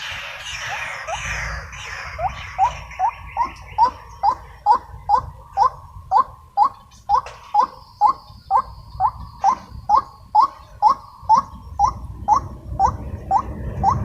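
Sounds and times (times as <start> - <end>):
waterhen calling: 0.0 - 14.0.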